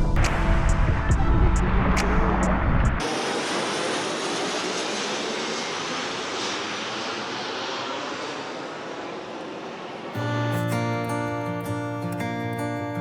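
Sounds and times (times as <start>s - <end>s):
steady rushing noise: 0.0s - 10.2s.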